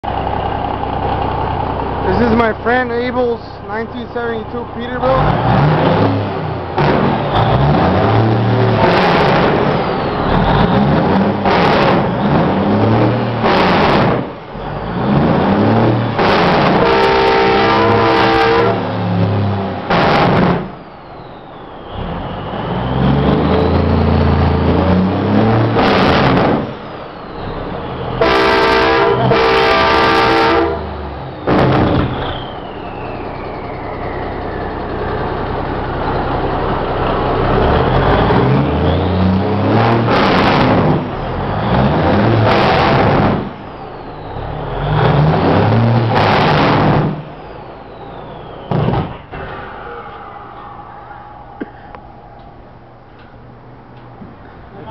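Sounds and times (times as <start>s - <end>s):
diesel truck engine revving: 0.0s - 54.9s
train horn blowing: 16.8s - 18.9s, 28.2s - 30.9s, 49.6s - 50.6s
turbo whistle winding down: 20.7s - 25.0s, 26.3s - 36.4s, 43.6s - 53.1s.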